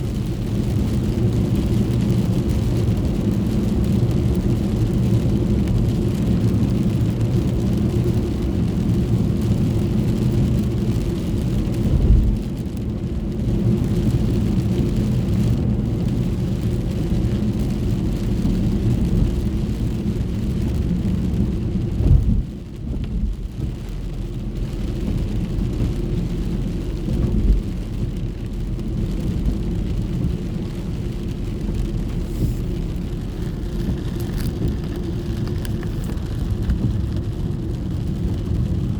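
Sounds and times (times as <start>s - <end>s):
car road and engine drone: 0.0s - 38.9s
rain on car: 0.0s - 38.9s
low thumps: 21.8s - 23.3s.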